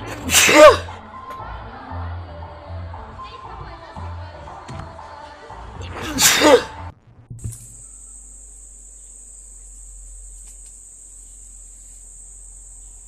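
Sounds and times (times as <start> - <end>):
low hum: 6.9 - 13.0
high-pitched whine: 7.3 - 13.0
click: 10.3 - 10.8.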